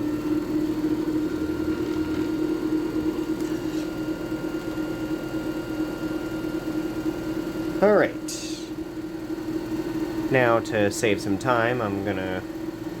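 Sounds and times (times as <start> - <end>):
machine motor humming: 0.0 - 5.0.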